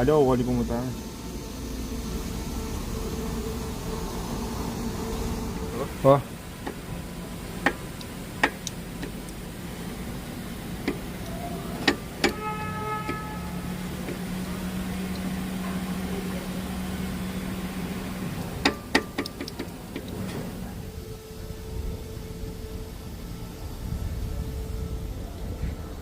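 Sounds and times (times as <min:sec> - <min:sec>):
steady low hum: 0:00.0 - 0:26.0
metallic clicks and knocks: 0:18.6 - 0:20.3.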